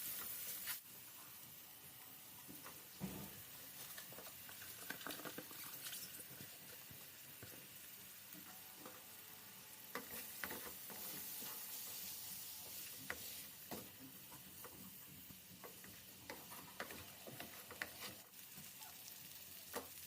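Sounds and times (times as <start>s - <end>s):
food sizzling in a pan: 0.0s - 20.0s
utensil scraping a pan: 9.9s - 12.1s, 15.8s - 18.3s.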